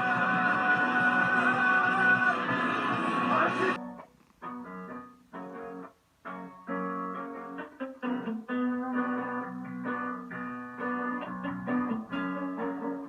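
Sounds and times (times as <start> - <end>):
guitar strumming chords: 0.0 - 13.0.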